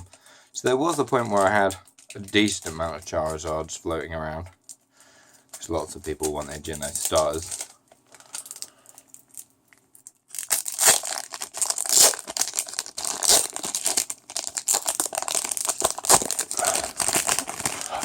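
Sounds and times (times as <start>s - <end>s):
foil wrapper tearing and crumpling: 6.2s - 9.4s, 10.3s - 18.0s.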